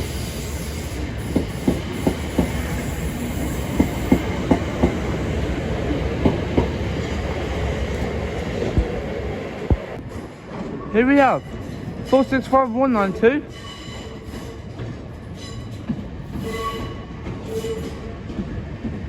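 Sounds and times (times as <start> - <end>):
low train running rumble: 0.0 - 19.0
train wheels clicking over rail joints: 0.1 - 9.0, 13.9 - 19.0.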